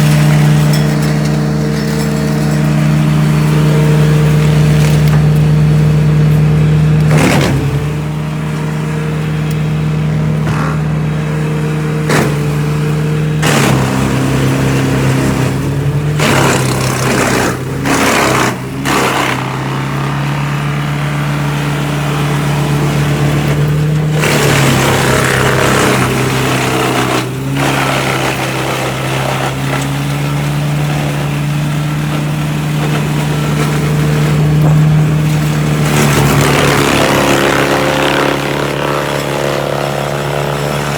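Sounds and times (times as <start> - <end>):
wood chipper engine running: 0.0 - 40.9
wood crunching in chipper: 0.0 - 40.9
sharp cracks of wood: 7.0 - 8.7, 10.4 - 11.0, 12.0 - 40.9.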